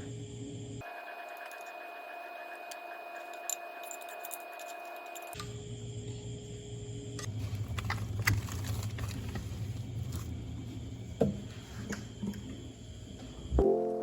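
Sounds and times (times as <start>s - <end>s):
low background hum: 0.0s - 13.6s
piano music: 13.6s - 14.0s.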